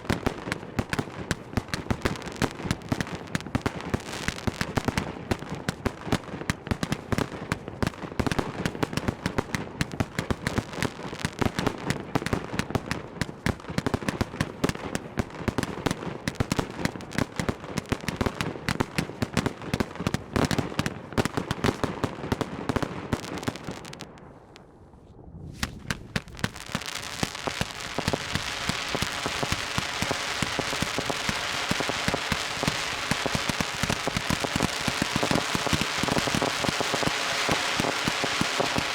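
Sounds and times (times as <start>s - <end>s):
fireworks bangs and pops: 0.0s - 24.7s, 25.4s - 38.9s
hiss of small pops: 25.5s - 38.9s.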